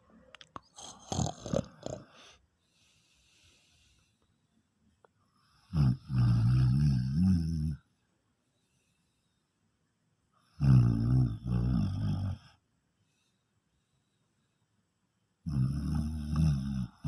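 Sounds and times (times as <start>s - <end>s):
man snoring: 0.7s - 2.3s, 5.6s - 7.8s, 10.6s - 12.5s, 15.5s - 17.0s
faint breath in: 2.0s - 4.5s.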